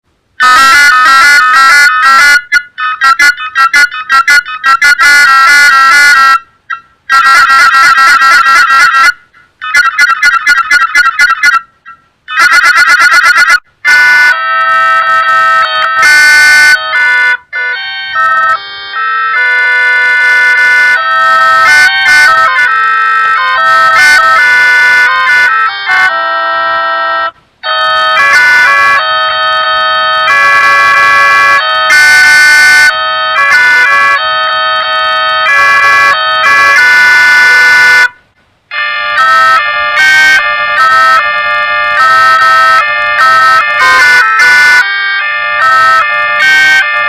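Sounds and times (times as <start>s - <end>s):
melodic electronic ringtone: 16.6s - 29.4s.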